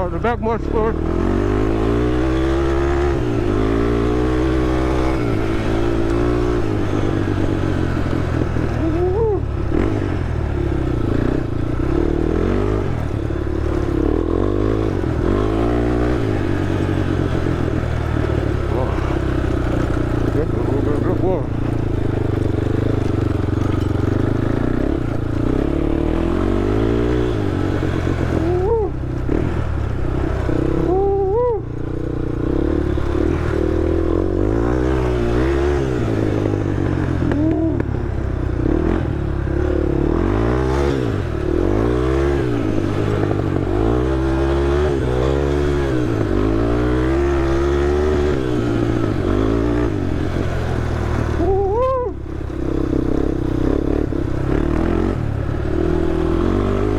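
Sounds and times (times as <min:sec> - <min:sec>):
atv engine revving: 0:00.0 - 0:56.9.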